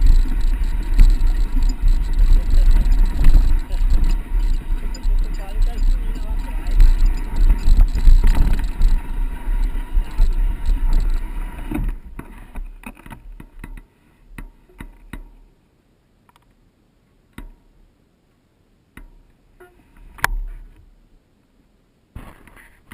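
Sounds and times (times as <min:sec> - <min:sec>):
sharp clicks: 0:00.0 - 0:12.0
wind noise on microphone: 0:00.0 - 0:13.3.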